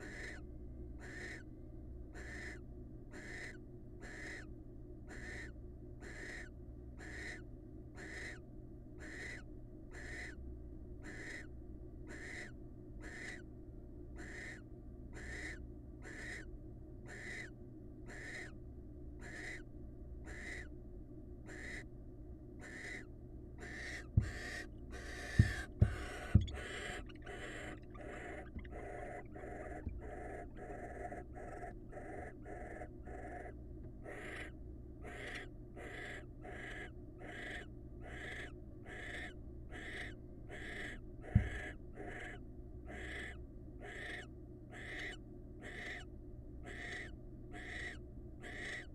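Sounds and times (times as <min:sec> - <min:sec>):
owl rasping hissing call: 0:00.0 - 0:00.4, 0:01.0 - 0:01.4, 0:02.2 - 0:02.6, 0:03.2 - 0:04.4, 0:05.1 - 0:07.4, 0:08.0 - 0:08.4, 0:09.0 - 0:09.4, 0:11.0 - 0:11.5, 0:12.1 - 0:13.4, 0:14.2 - 0:14.6, 0:15.2 - 0:16.5, 0:17.1 - 0:17.5, 0:18.1 - 0:18.5, 0:19.2 - 0:19.6, 0:20.3 - 0:20.7, 0:21.5 - 0:21.9, 0:22.6 - 0:48.9
loud thumps: 0:24.2 - 0:24.5, 0:25.2 - 0:26.7.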